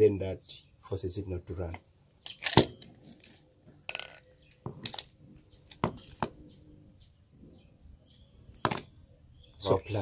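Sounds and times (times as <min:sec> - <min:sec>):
metal parts knocking and clicking: 0:02.2 - 0:06.3.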